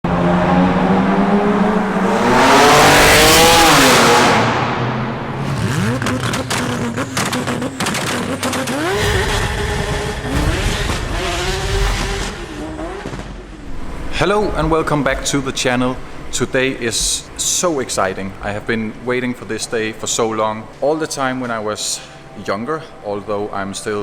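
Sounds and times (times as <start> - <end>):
car engine revving: 0.0 - 20.1
exhaust pops and crackles: 5.6 - 18.6.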